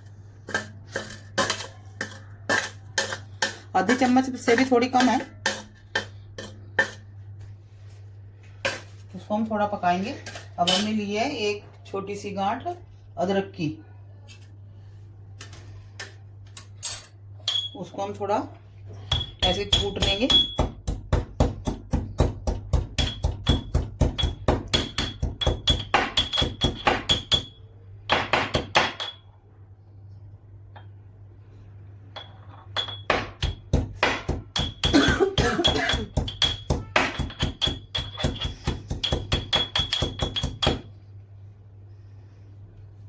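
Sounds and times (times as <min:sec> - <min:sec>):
pestle pounding in a mortar: 0:00.5 - 0:07.0, 0:19.1 - 0:27.5, 0:28.1 - 0:29.1, 0:32.9 - 0:41.0.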